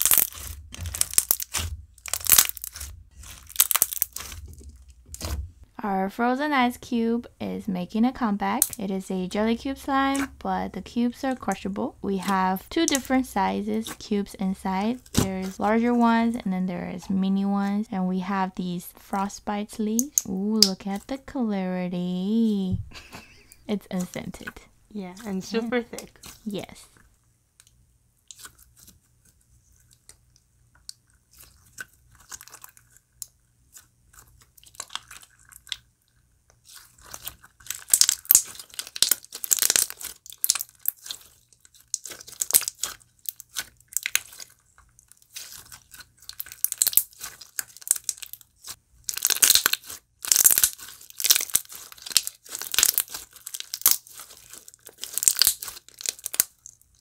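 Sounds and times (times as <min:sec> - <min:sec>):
slime cubes crunching: 0:00.0 - 0:05.4, 0:08.2 - 0:17.9, 0:19.1 - 0:21.2, 0:30.8 - 0:57.0.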